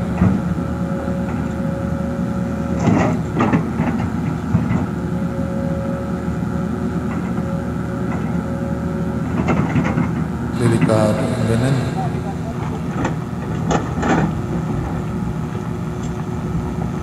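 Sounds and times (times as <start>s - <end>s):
diesel engine running: 10.1s - 15.6s
thin whine: 10.4s - 13.7s.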